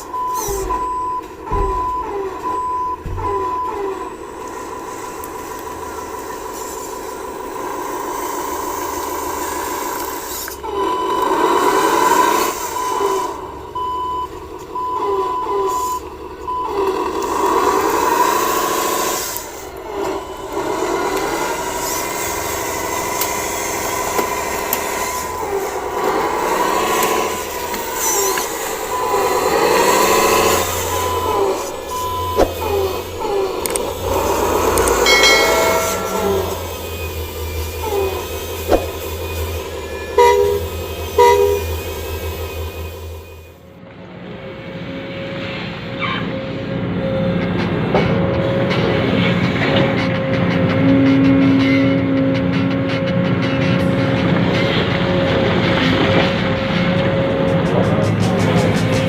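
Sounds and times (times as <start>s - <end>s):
reversing beeper: 0.0s - 6.6s, 10.7s - 17.0s, 24.1s - 43.6s
small electric motors whirring: 16.7s - 35.8s
thin steady high tone: 29.0s - 43.5s.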